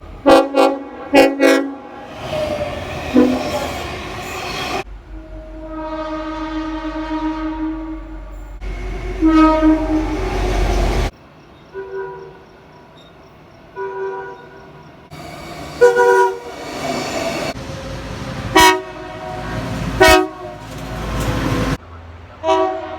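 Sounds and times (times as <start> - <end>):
passing train rumble: 0.0 - 22.9
train horn blasts: 0.2 - 2.2, 3.0 - 4.0, 4.7 - 11.1, 11.7 - 12.4, 13.8 - 14.7, 15.8 - 16.6, 18.5 - 20.8, 22.4 - 22.9.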